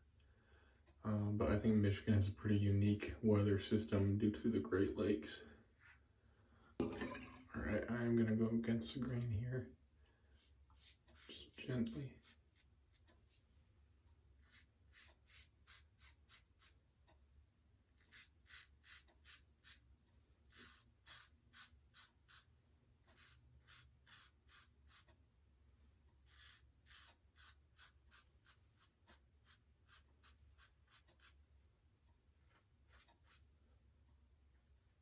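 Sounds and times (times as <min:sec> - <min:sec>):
razor scraping stubble: 0:10.4 - 0:13.1, 0:14.4 - 0:16.8, 0:18.0 - 0:19.8, 0:20.5 - 0:25.1, 0:26.2 - 0:31.4, 0:32.5 - 0:33.5.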